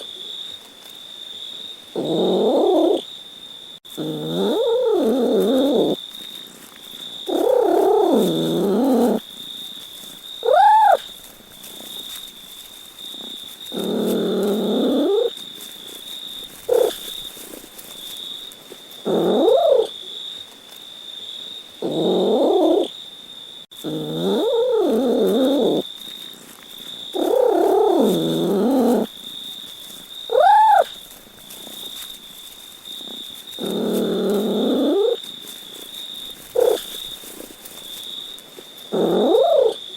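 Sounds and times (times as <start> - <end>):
cat meowing: 10.4 - 11.0, 30.3 - 30.9, 39.0 - 39.8.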